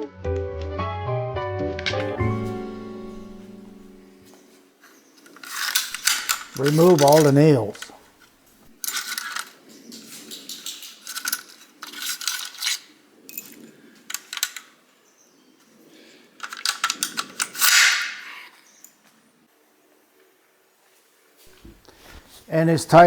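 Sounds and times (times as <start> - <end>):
nails clicking and clinking: 5.2 - 14.8.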